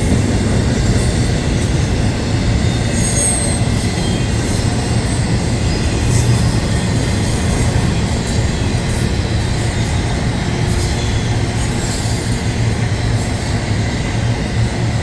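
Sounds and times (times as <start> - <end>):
high wheel squeal: 0.0 - 14.0
train wheels rumbling on rail: 0.0 - 15.0.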